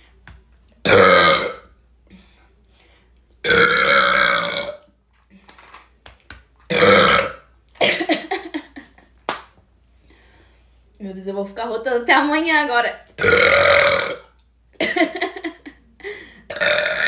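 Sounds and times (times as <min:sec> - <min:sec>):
woman burping loudly: 0:00.8 - 0:01.7, 0:03.4 - 0:04.9, 0:06.7 - 0:08.3, 0:13.2 - 0:15.2, 0:16.5 - 0:17.0.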